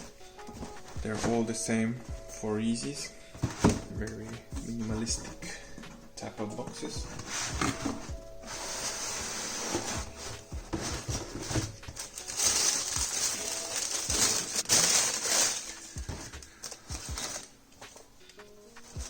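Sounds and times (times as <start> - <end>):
paper crinkling and rustling: 6.7 - 19.0.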